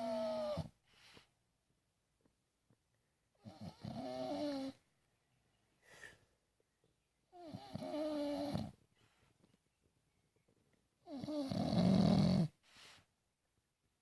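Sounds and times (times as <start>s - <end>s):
dog snoring: 0.0s - 0.8s, 3.4s - 4.8s, 7.3s - 8.8s, 11.0s - 12.6s
faint dog breath: 0.6s - 1.4s, 12.6s - 13.2s.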